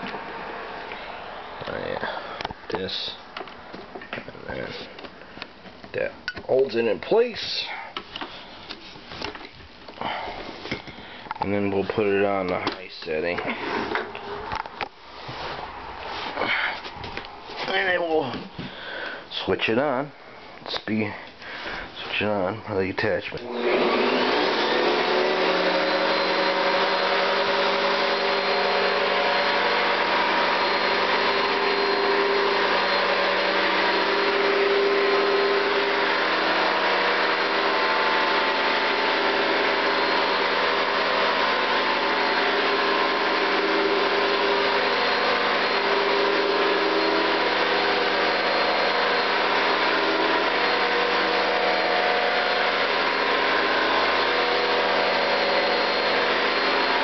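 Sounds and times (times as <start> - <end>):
vacuum cleaner running: 0.0 - 3.2, 9.2 - 11.0, 13.4 - 14.6, 23.4 - 57.0.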